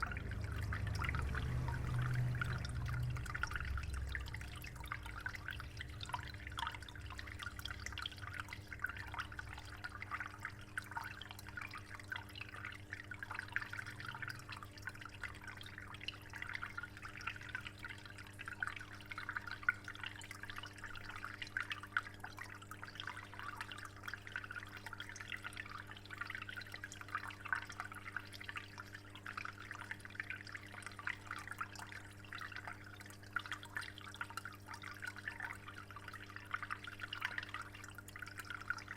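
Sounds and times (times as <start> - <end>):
steady low hum: 0.0 - 18.0
dripping water: 0.0 - 38.9
water trickling and splashing: 0.0 - 38.9.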